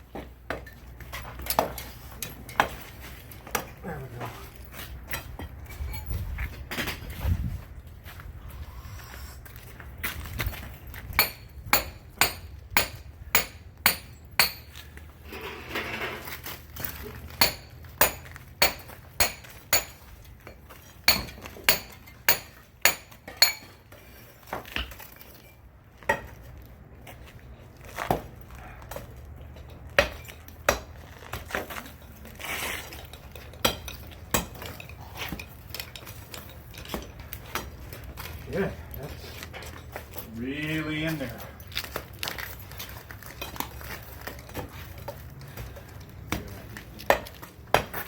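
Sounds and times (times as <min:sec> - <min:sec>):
hammer striking brick wall: 0:01.4 - 0:01.8, 0:11.1 - 0:14.8, 0:17.3 - 0:23.8, 0:30.0 - 0:31.7, 0:33.6 - 0:35.5, 0:46.3 - 0:48.0.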